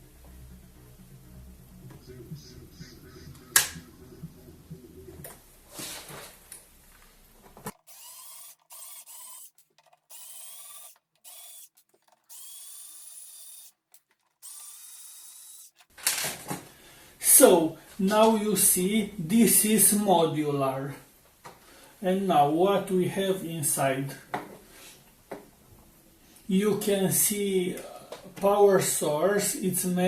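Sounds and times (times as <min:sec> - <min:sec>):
cordless drill whirring: 0:07.7 - 0:13.7, 0:14.4 - 0:15.8.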